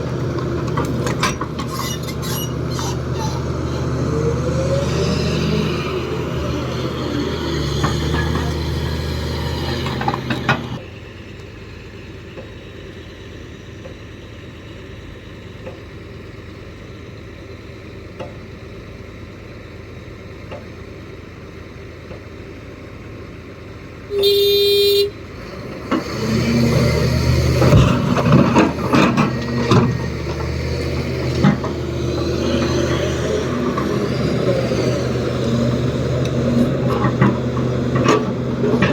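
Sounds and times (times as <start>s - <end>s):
heavy machinery engines rumbling: 0.0s - 38.9s
short horn toot: 24.1s - 25.2s.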